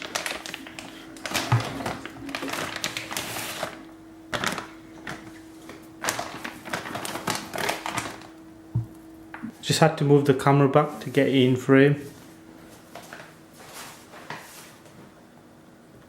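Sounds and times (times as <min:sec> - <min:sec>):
packaging clicks and rustles: 0:00.0 - 0:08.4
faint steady hum: 0:00.0 - 0:16.0
low thump: 0:08.7 - 0:09.0.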